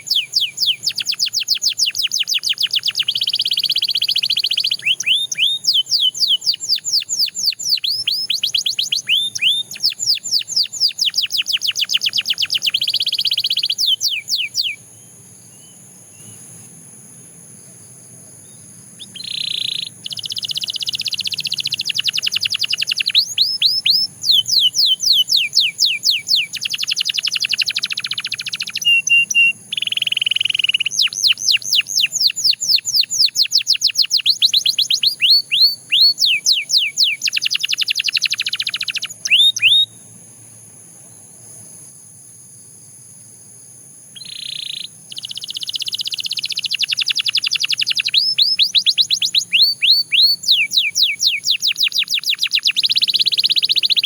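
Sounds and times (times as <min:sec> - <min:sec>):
canary singing: 0:00.0 - 0:16.8, 0:18.4 - 0:40.0, 0:44.1 - 0:54.0.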